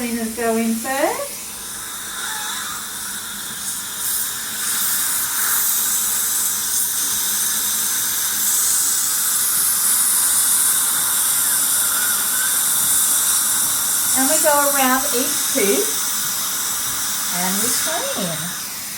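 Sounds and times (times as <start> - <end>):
dental handpiece hissing: 0.2 - 18.9
suction tubes drawing water: 7.8 - 18.9.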